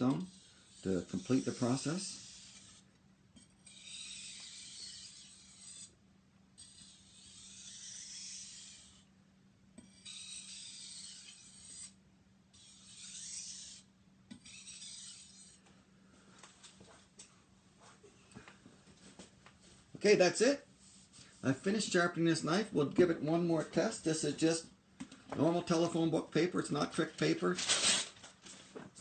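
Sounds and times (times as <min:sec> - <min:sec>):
faint steady hum: 0:00.0 - 0:29.0
knife scraping on whetstone: 0:00.1 - 0:06.0, 0:06.6 - 0:09.1, 0:09.8 - 0:12.0, 0:12.6 - 0:15.6.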